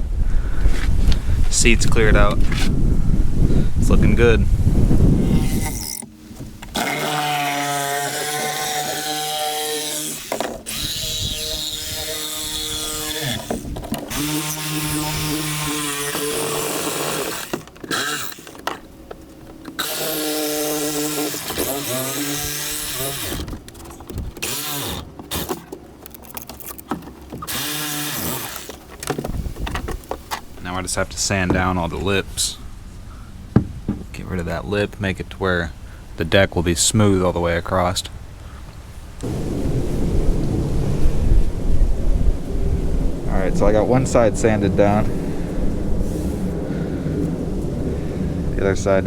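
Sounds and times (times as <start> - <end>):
power tool sanding fiberglass: 5.2 - 25.7, 27.3 - 29.5.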